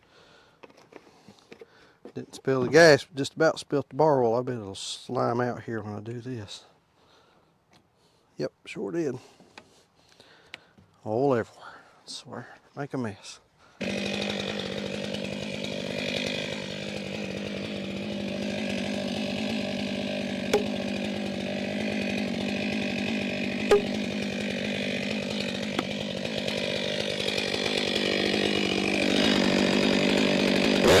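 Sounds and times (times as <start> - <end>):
chainsaw engine running: 13.8 - 31.0.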